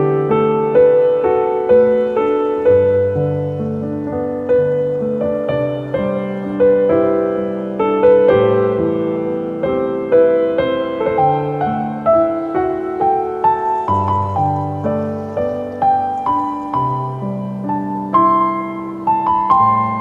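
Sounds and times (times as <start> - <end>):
soft solo piano music: 0.0 - 20.0.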